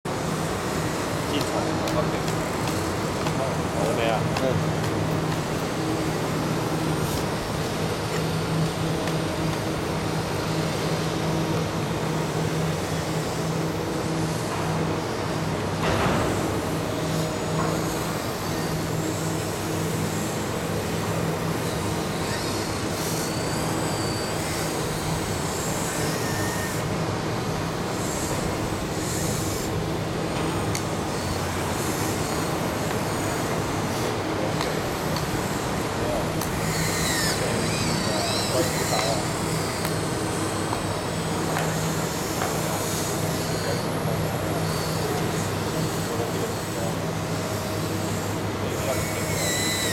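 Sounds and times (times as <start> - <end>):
heavy machine engine humming: 0.1 - 49.9
faint high squeaks: 36.6 - 39.3.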